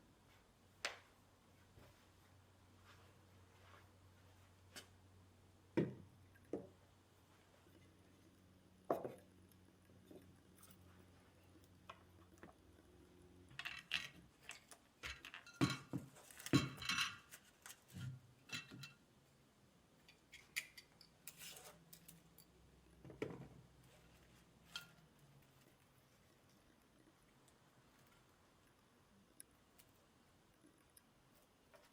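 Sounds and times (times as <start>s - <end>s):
faint steady hum: 0.0s - 31.9s
objects clinking and knocking: 13.5s - 19.0s.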